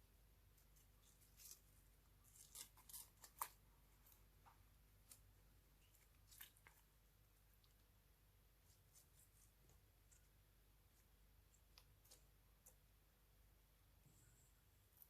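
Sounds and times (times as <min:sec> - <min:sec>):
faint clicks and snips: 0:11.0 - 0:12.9.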